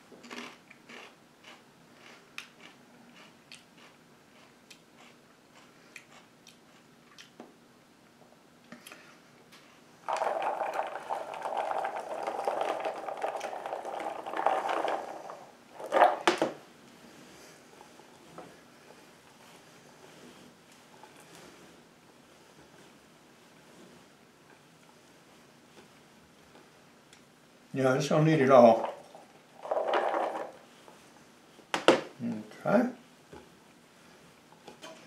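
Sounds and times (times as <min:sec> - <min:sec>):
celery crunching: 0:00.2 - 0:07.3.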